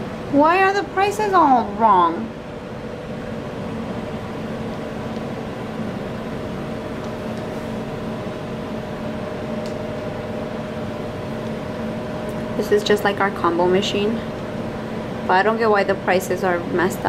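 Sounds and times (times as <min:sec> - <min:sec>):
steady mechanical hum: 0:00.0 - 0:17.0.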